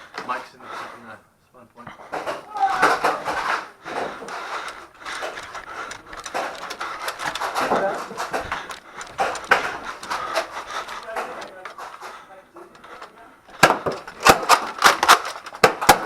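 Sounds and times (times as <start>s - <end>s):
person breathing hard: 1.9s - 14.2s.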